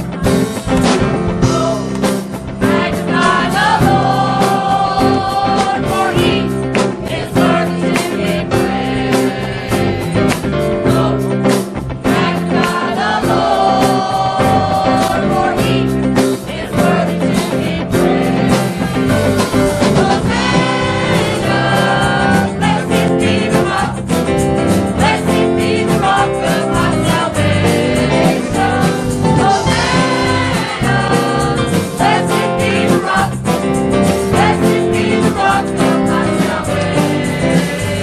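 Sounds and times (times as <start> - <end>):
band with steady beat: 0.0 - 38.0
choir singing gospel music: 0.0 - 38.0.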